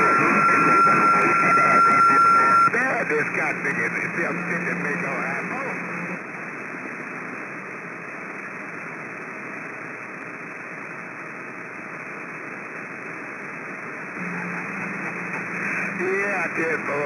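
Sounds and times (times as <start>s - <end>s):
low steady hum: 0.0s - 8.3s, 14.2s - 17.0s
radio static hiss: 0.0s - 17.0s.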